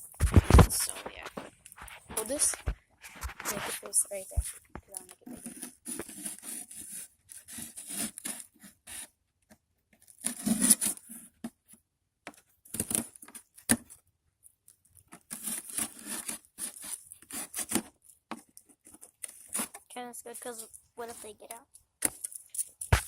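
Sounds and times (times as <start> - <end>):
knife cutting cardboard: 5.2 - 9.1, 10.2 - 11.4, 15.2 - 19.9.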